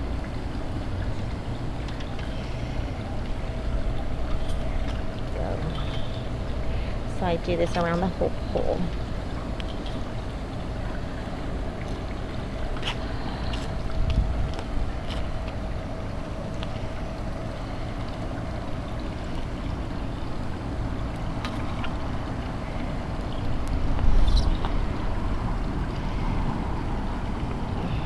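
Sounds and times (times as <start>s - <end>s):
faint hum: 0.0s - 28.0s
wind rumbling on microphone: 12.5s - 16.0s, 20.4s - 28.0s.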